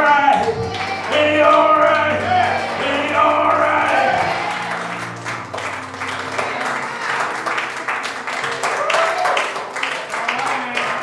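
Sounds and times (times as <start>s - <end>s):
people calling out: 0.0s - 4.9s
instrumental music: 0.0s - 10.2s
congregation clapping: 0.0s - 11.0s.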